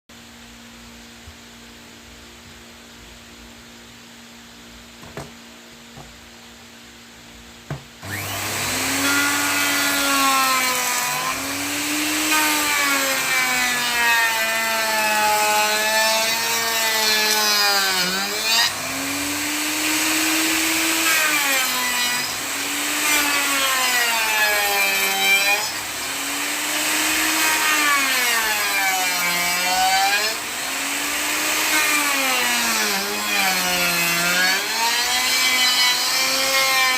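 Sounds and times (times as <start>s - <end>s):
electric wood router cutting: 7.7s - 36.9s.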